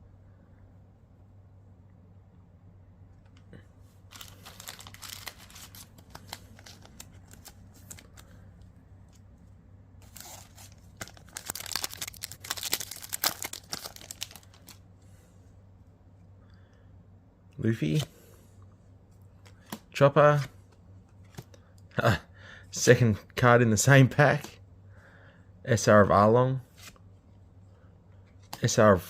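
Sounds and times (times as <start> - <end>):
foil wrapper crinkling and tearing: 4.1 - 8.3, 10.0 - 14.8.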